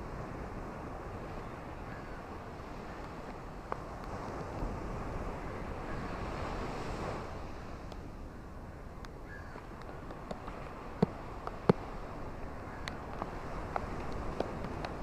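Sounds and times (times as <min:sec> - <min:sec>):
ocean surf on beach: 0:00.0 - 0:15.0
bird calling: 0:01.4 - 0:02.4, 0:08.3 - 0:15.0.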